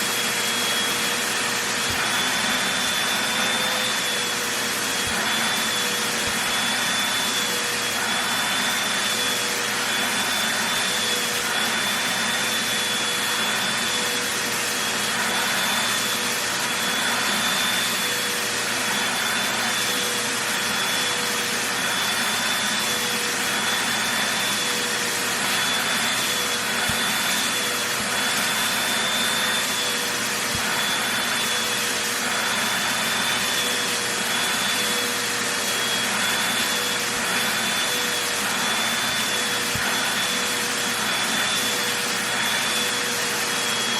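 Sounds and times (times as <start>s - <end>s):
vacuum cleaner running: 0.0s - 43.9s.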